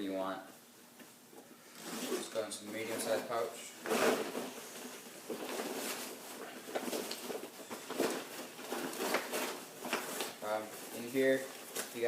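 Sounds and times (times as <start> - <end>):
zipper and fabric rustling: 1.8 - 11.4.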